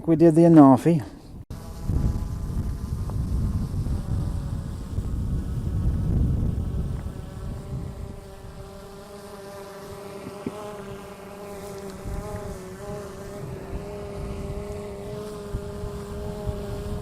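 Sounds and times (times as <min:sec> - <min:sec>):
wind rumble on microphone: 0:01.5 - 0:08.8, 0:12.0 - 0:17.0.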